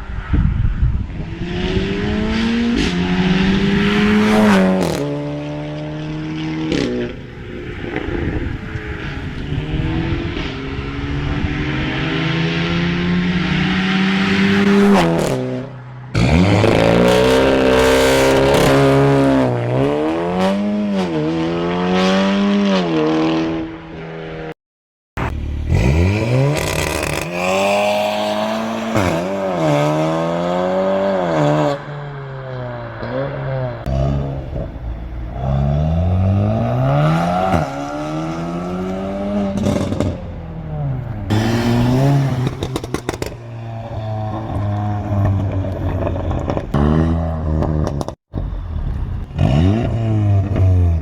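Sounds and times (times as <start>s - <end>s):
car engine accelerating: 25.2s - 51.0s.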